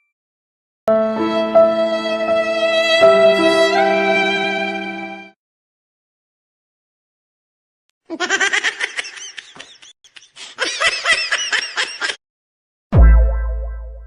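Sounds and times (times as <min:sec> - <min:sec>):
high-pitched laughter: 0:08.1 - 0:12.2.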